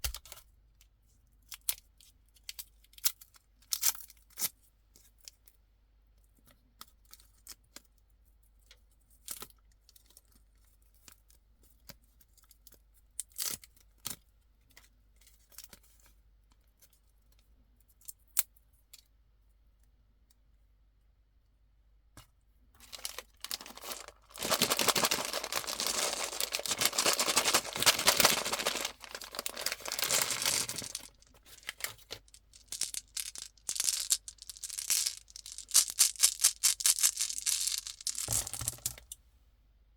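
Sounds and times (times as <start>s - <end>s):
plastic packaging crinkling and tearing: 22.8s - 39.0s
candy wrappers rustling: 22.8s - 39.2s.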